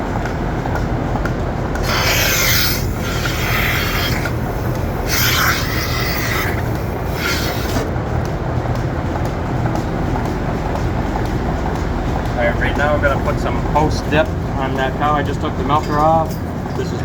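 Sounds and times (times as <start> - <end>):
milking machinery drone: 0.0 - 17.0
rasping hisses: 1.8 - 7.9.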